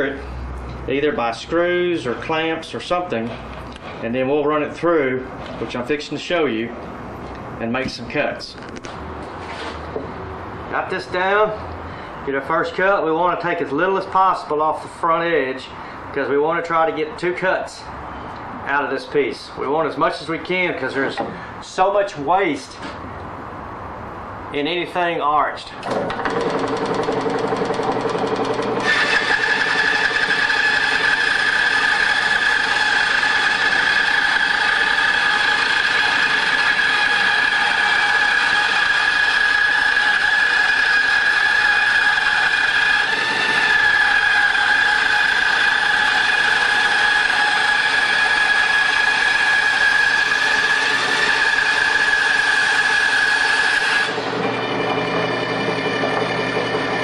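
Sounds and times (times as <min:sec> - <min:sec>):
band saw running: 0:25.8 - 0:57.0
blade cutting wood with whine: 0:25.8 - 0:57.0.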